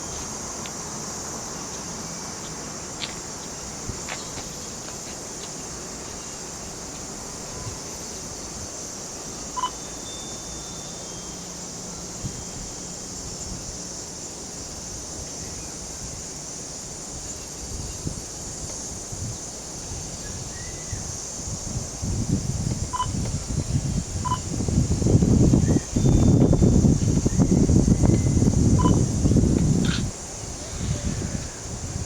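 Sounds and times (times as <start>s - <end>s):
insect chirring: 0.0s - 32.0s
low wind rumble: 11.2s - 32.0s.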